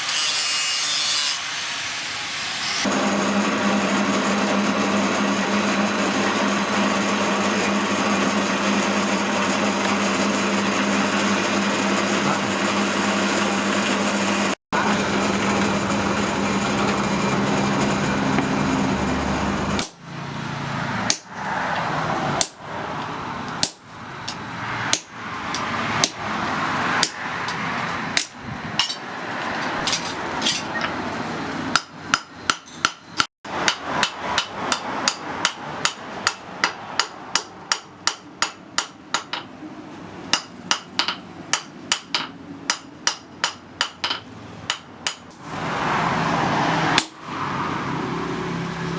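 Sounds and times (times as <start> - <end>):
steady machine noise: 2.9 - 20.7.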